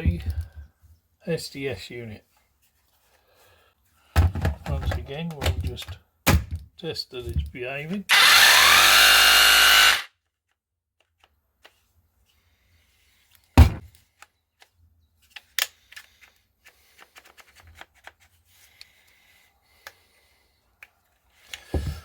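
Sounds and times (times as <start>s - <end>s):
hammer drill running: 8.1s - 10.1s.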